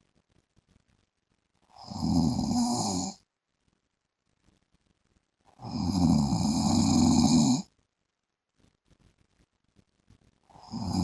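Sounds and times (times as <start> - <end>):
man snoring: 1.8 - 3.2, 5.6 - 7.7, 10.6 - 11.0.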